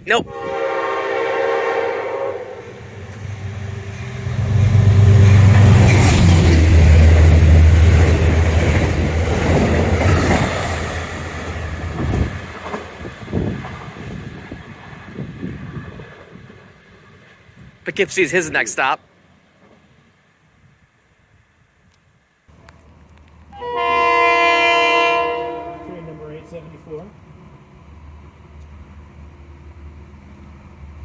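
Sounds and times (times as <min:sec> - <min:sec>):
train rumbling past: 0:00.0 - 0:31.0
train horn: 0:00.2 - 0:03.9, 0:23.5 - 0:26.8.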